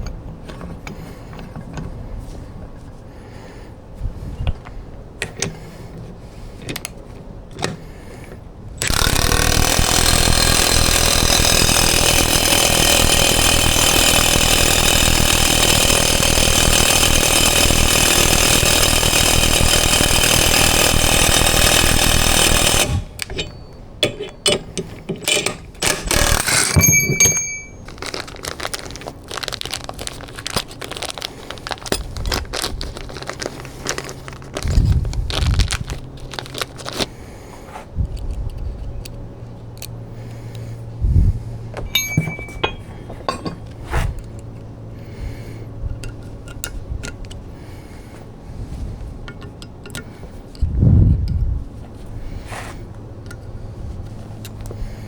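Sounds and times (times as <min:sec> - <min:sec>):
tools and metal parts clicking: 0:00.0 - 0:02.0, 0:05.2 - 0:34.7, 0:41.8 - 0:44.4, 0:45.9 - 0:47.5, 0:49.2 - 0:50.7
power tool running: 0:08.8 - 0:23.7, 0:25.8 - 0:32.0, 0:41.9 - 0:43.5
brief ringing note: 0:41.9 - 0:43.0.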